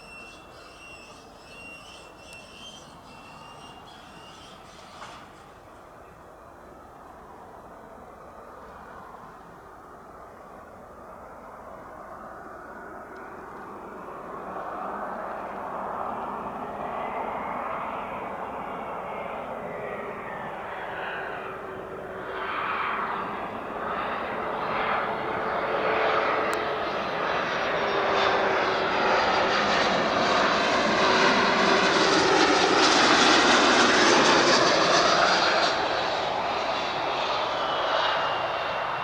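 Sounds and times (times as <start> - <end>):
jet engines whining: 0.0 - 6.2, 16.2 - 39.0.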